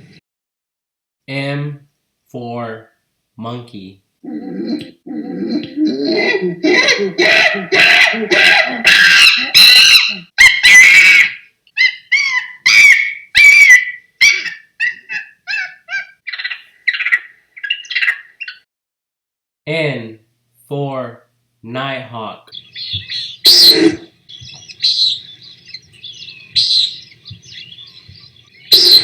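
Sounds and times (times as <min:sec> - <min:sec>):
monkey hoots: 0:04.2 - 0:16.2, 0:23.4 - 0:24.1, 0:28.7 - 0:29.0
monkey screeches: 0:04.3 - 0:17.2, 0:23.4 - 0:24.1, 0:28.7 - 0:29.0.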